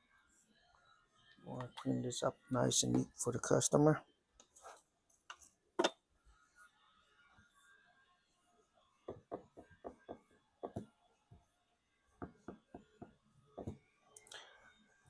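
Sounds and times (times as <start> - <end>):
light taps and knocks: 9.1 - 10.9.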